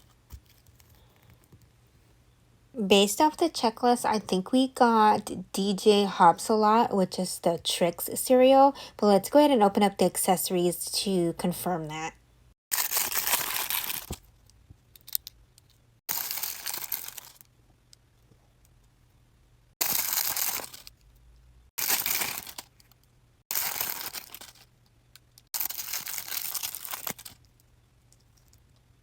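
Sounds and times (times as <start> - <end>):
wrappers crinkling and tearing: 12.7 - 14.2, 16.1 - 17.5, 19.8 - 21.0, 21.8 - 24.7, 25.6 - 27.5.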